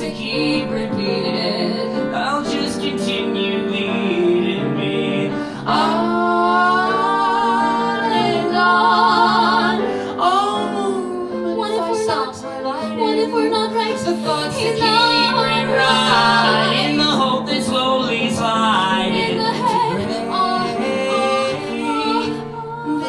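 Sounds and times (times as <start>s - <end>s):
instrumental accompaniment: 0.0s - 23.0s
woman singing with vibrato: 5.7s - 17.2s.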